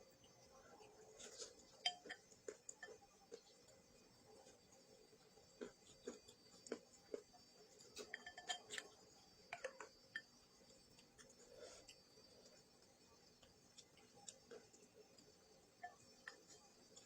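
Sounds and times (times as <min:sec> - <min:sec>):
utensils clinking on dishware: 0:08.0 - 0:08.9.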